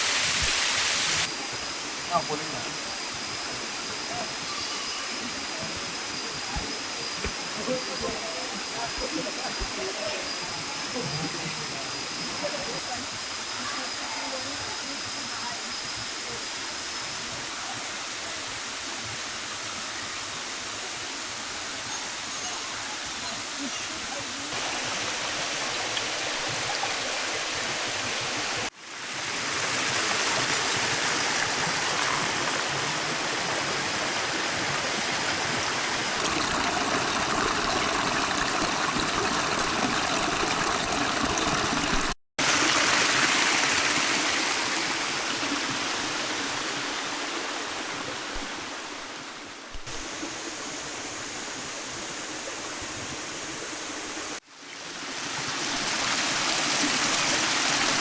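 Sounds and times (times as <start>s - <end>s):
waterfall rushing: 0.0s - 8.8s, 24.5s - 51.8s.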